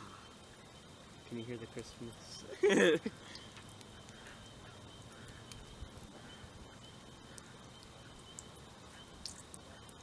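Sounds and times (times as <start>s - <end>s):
insect trill: 0.0s - 10.0s
low hiss: 0.0s - 10.0s
faint ticks: 3.2s - 10.0s.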